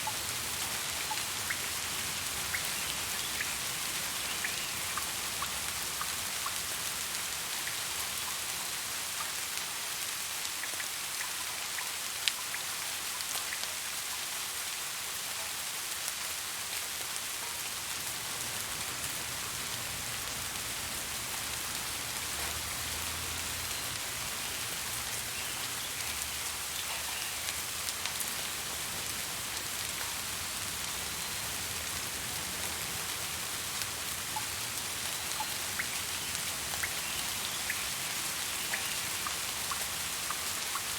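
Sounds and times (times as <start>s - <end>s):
raindrop ticks: 0.0s - 8.4s, 10.4s - 13.7s, 17.5s - 30.8s, 33.7s - 40.9s
steady rain: 0.0s - 40.9s.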